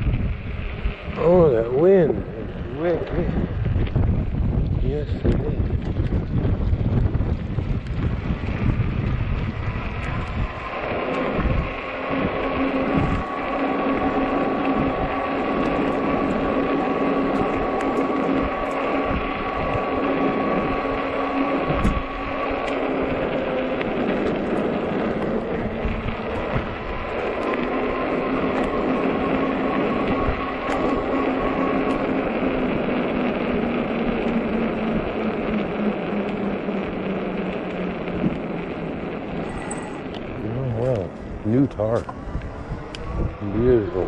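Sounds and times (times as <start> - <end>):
electric motor whine: 0.0 - 44.0
wind rushing over microphone: 0.0 - 44.0.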